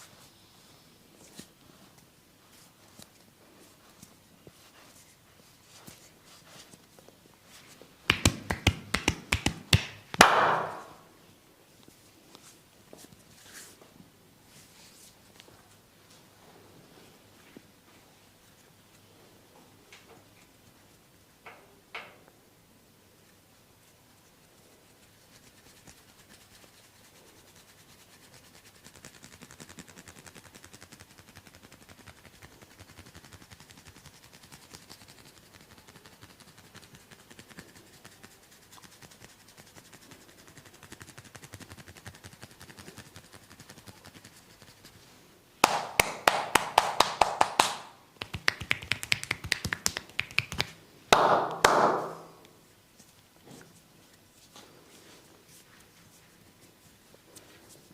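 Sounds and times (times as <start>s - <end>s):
rapid percussive massage tapping: 8.1s - 11.0s, 45.6s - 52.4s.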